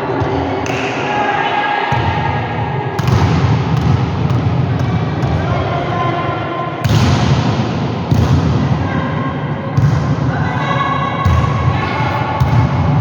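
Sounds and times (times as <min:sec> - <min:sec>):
volleyball thumps: 0:03.0 - 0:05.4.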